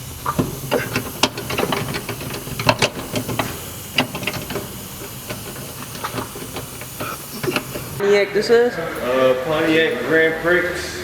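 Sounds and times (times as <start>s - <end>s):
steady low hum: 0.0s - 8.0s.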